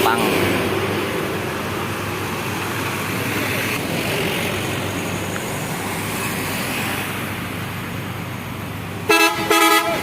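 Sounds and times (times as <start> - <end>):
road traffic rushing past: 0.0 - 10.0.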